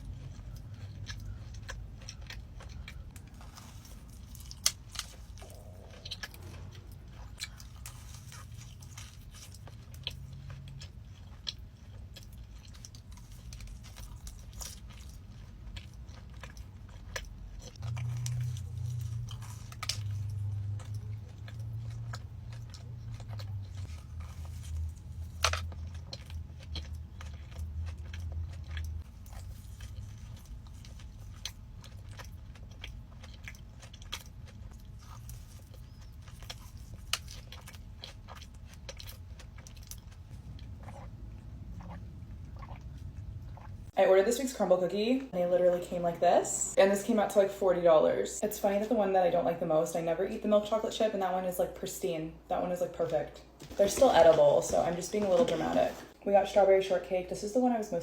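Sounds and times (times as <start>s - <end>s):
chewing and biting food: 0.0s - 44.0s
sharp food crunches: 0.1s - 41.1s
low rumble: 2.8s - 9.0s, 39.0s - 44.0s.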